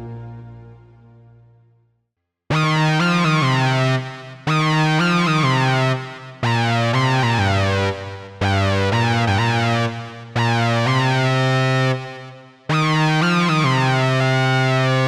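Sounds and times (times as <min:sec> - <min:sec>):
synthesizer notes: 0:02.5 - 0:11.5.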